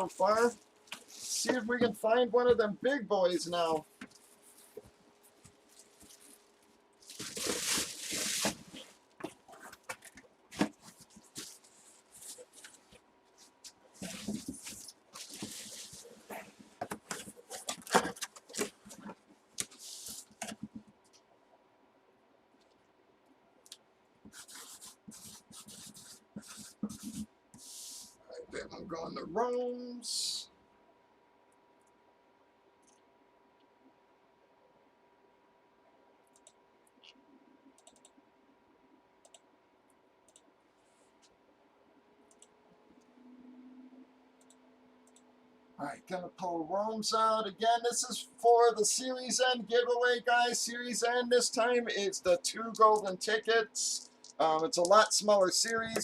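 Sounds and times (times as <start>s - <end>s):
plastic and paper crinkling: 0.0s - 2.7s, 3.4s - 20.9s, 24.3s - 27.2s.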